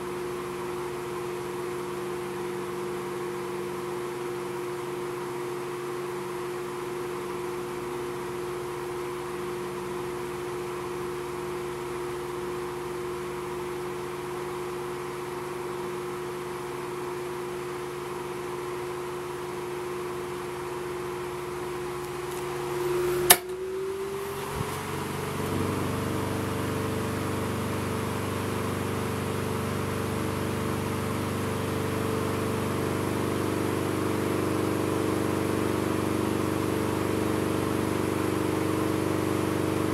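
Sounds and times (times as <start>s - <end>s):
table fan running: 0.0s - 39.9s
fan switch click: 22.2s - 23.6s.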